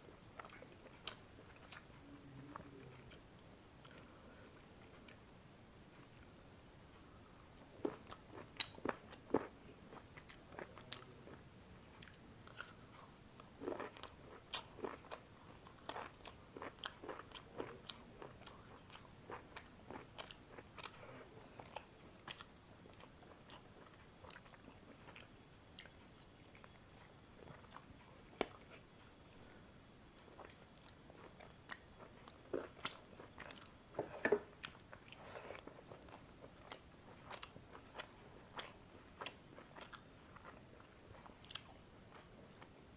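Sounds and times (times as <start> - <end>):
person chewing food: 0.1 - 5.3, 5.9 - 42.7
food crunching: 12.0 - 28.8.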